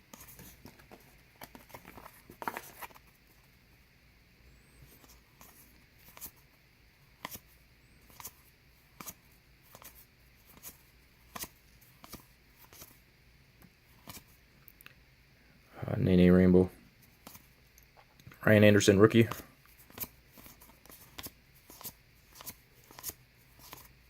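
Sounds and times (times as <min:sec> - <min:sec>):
cardboard cards flicking: 0:19.3 - 0:23.9.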